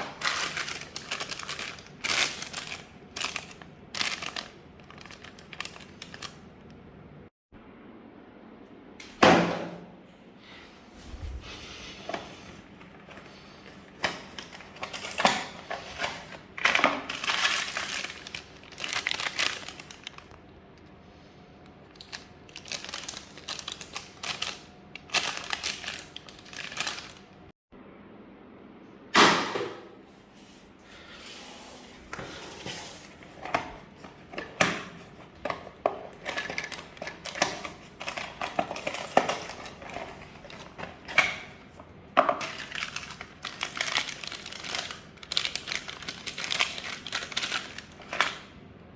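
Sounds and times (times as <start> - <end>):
packaging crinkling and rustling: 0.0 - 6.8, 11.1 - 20.9, 21.6 - 27.5, 32.0 - 48.6.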